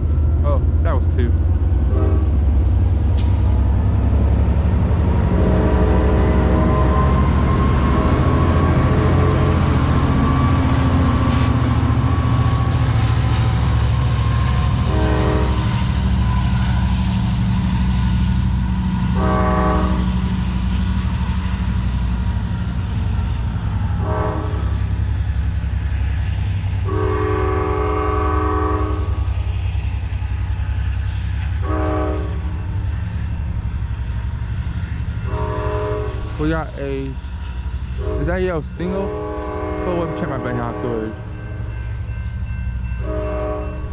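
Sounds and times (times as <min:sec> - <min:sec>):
train rumbling on rails: 0:00.0 - 0:43.9
train horn blasts: 0:01.8 - 0:02.5, 0:05.3 - 0:13.4, 0:14.1 - 0:16.8, 0:19.1 - 0:20.4, 0:24.0 - 0:24.8, 0:26.8 - 0:29.2, 0:31.6 - 0:32.5, 0:35.3 - 0:36.4, 0:38.0 - 0:41.8, 0:42.9 - 0:43.9.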